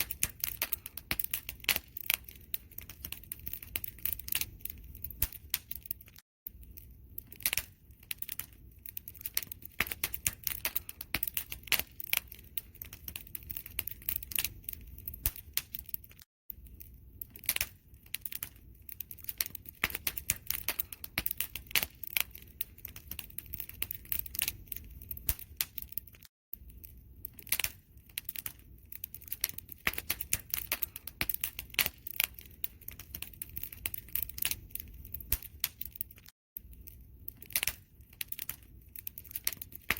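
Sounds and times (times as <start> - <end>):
low rumble of flames: 0.0 - 39.9
wood fire crackling: 0.0 - 39.9.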